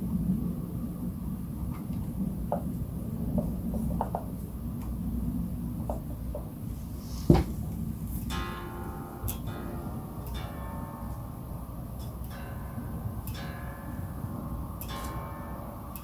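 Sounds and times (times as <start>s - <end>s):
steady low rumble: 0.0s - 16.0s
loud knock: 7.3s - 7.6s.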